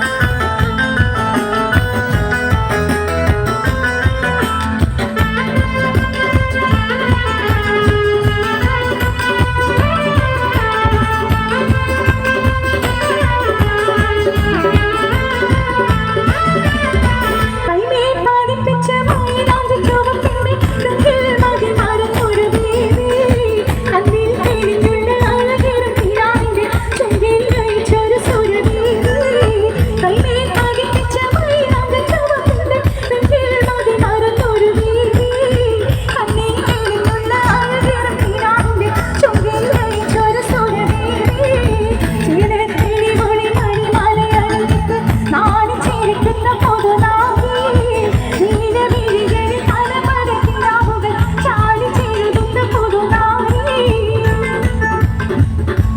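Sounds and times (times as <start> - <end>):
song through stage sound system: 0.0 - 55.9.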